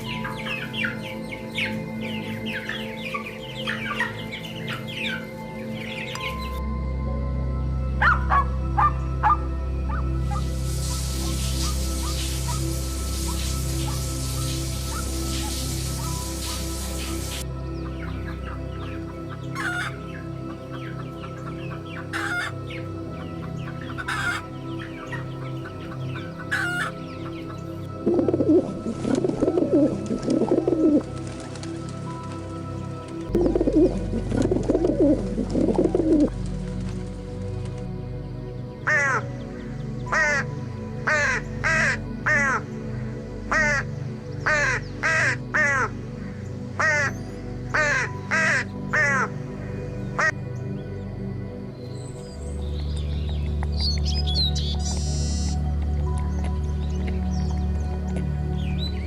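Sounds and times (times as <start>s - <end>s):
background music: 0.0s - 59.0s
bird harsh falling calls: 8.0s - 27.7s, 38.9s - 50.4s
chickens clucking: 19.6s - 20.0s, 21.9s - 22.5s, 23.9s - 24.4s, 26.0s - 26.9s.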